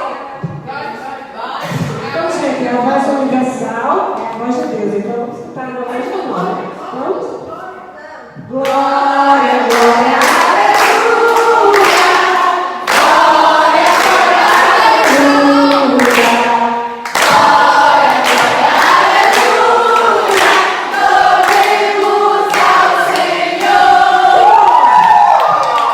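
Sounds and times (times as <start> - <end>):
group singing chorus: 8.5 - 25.4.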